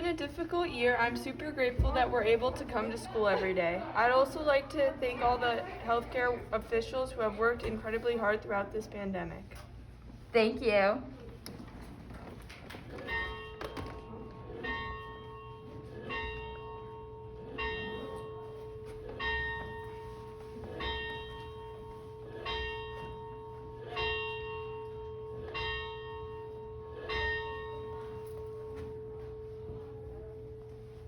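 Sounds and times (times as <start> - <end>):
large bell tolling: 13.1 - 30.0.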